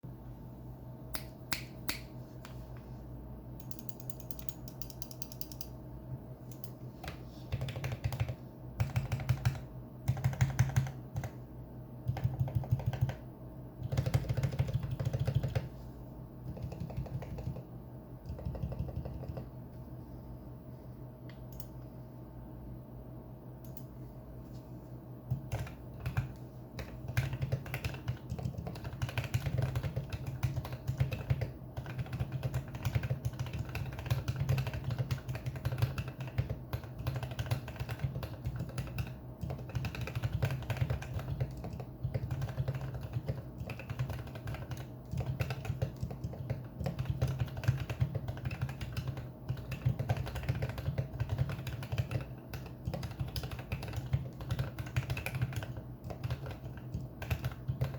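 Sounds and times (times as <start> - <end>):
steady low hum: 0.0 - 57.9
mechanical keyboard typing: 6.5 - 11.4, 12.1 - 13.2, 13.8 - 15.7, 16.5 - 17.6, 18.3 - 19.5, 25.3 - 57.9.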